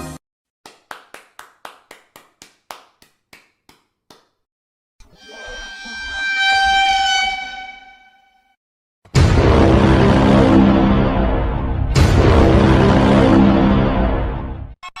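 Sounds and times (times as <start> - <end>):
high horn-like held tone: 5.0 - 8.6.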